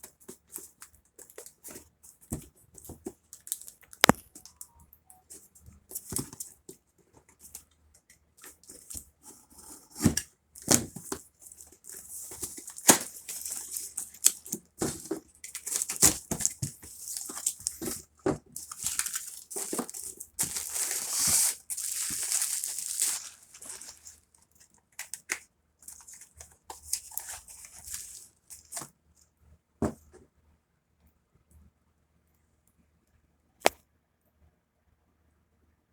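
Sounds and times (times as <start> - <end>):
packaging tearing and crinkling: 11.8 - 18.0, 18.6 - 24.3, 25.0 - 28.9.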